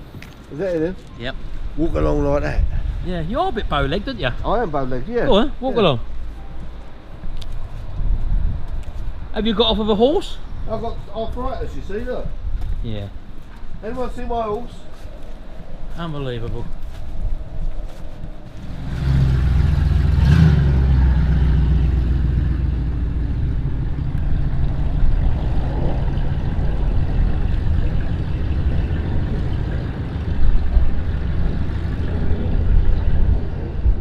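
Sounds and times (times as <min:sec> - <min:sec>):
car engine starting and revving: 0:18.6 - 0:33.2.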